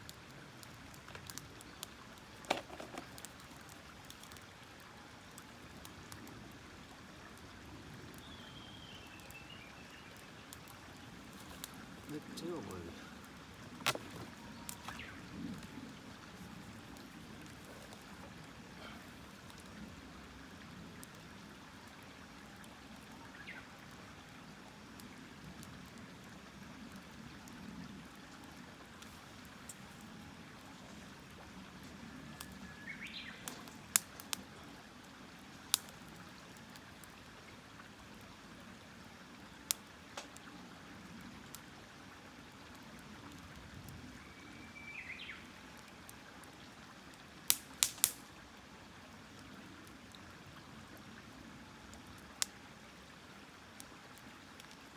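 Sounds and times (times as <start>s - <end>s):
campfire rushing hiss: 0.0s - 44.2s, 47.0s - 50.0s
wood popping and cracking: 0.6s - 4.4s, 10.5s - 19.7s, 47.5s - 48.2s.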